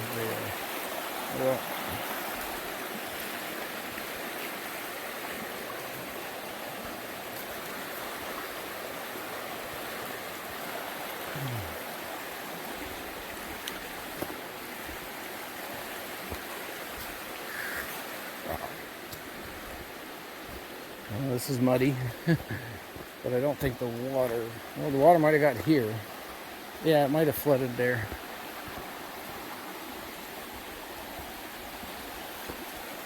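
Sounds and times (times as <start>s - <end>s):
river water rushing: 0.0s - 33.0s
light ticks: 13.6s - 14.3s.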